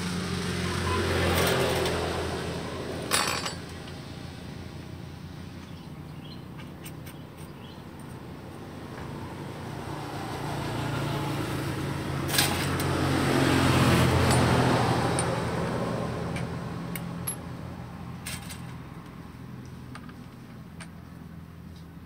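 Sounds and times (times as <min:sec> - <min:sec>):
vehicle engine passing by: 0:00.0 - 0:03.2, 0:08.4 - 0:18.2.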